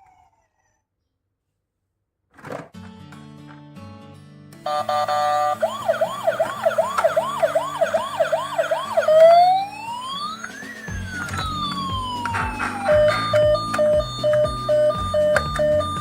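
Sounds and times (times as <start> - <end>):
background music: 2.8 - 16.0
emergency vehicle siren: 4.7 - 16.0.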